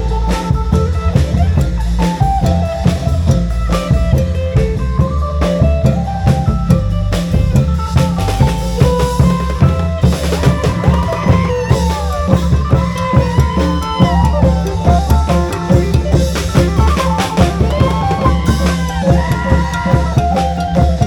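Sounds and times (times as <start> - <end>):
drums and percussion: 0.0 - 21.0
lute melody: 0.0 - 21.0.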